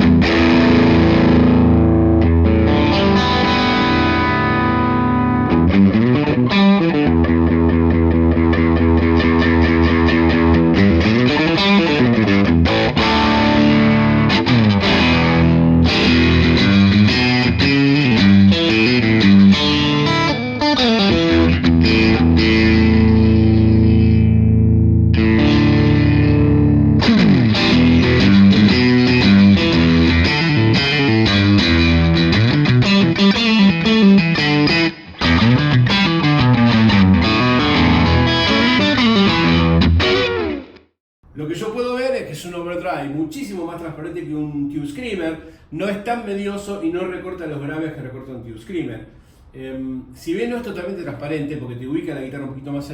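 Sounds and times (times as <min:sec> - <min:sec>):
overdriven electric guitar: 0:00.0 - 0:41.0.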